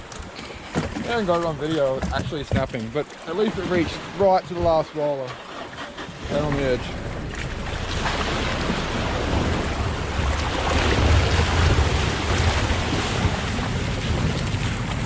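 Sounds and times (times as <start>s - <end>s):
rushing water: 0.0s - 15.0s
wind buffeting microphone: 6.0s - 15.0s.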